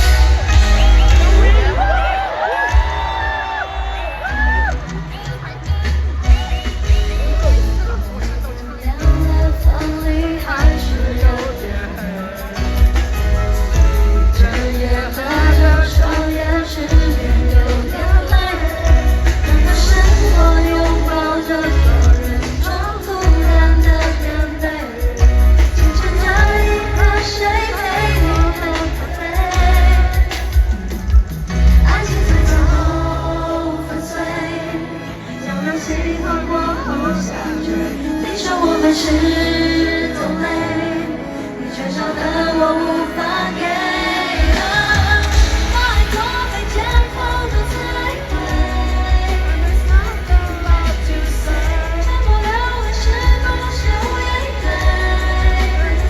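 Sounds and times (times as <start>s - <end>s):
woman singing: 2.4s - 56.0s.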